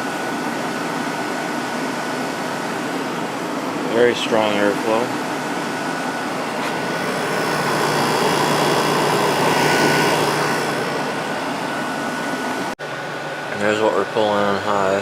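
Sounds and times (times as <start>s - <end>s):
air conditioner running: 0.0s - 15.0s.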